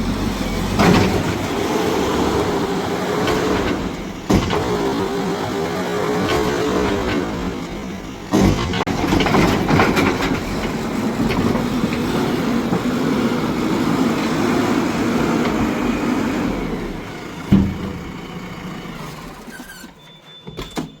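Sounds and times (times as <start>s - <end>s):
diesel engine running: 0.0s - 19.6s
thump: 17.5s - 18.3s.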